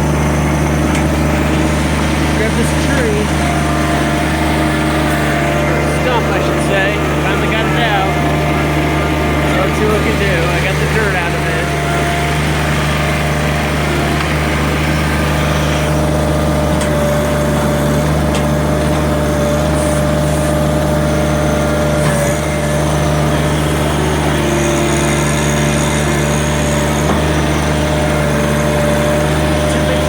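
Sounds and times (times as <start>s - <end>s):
steady whine: 0.0s - 30.0s
tractor diesel engine running: 0.0s - 30.0s.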